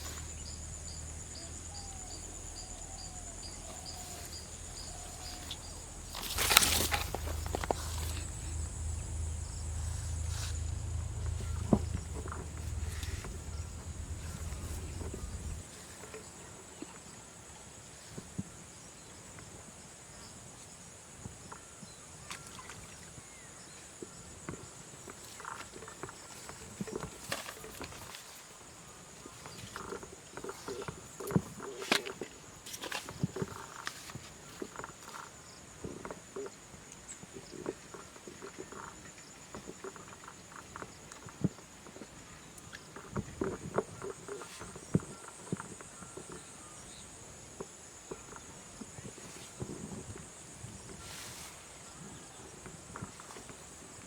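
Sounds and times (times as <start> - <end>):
low rumble: 0.0 - 15.6
insect chirring: 0.0 - 15.7.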